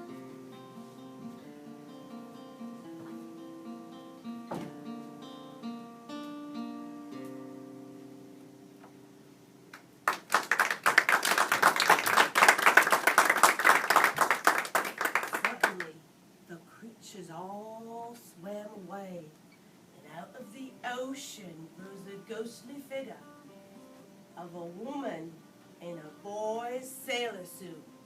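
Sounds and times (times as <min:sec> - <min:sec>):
acoustic guitar plucked melody: 0:00.0 - 0:09.7, 0:20.4 - 0:27.7
audience applause: 0:10.0 - 0:15.8.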